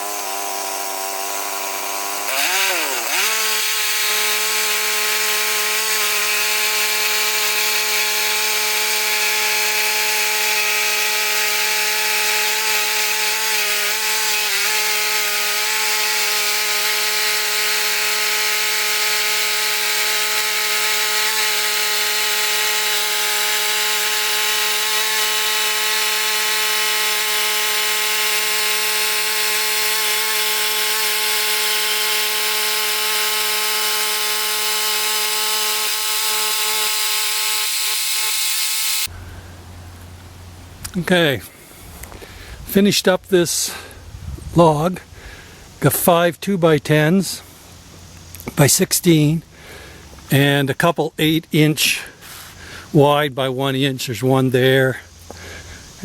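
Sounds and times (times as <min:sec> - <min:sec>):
band saw rasping through log: 0:00.0 - 0:39.1
sawmill engine: 0:00.0 - 0:39.6.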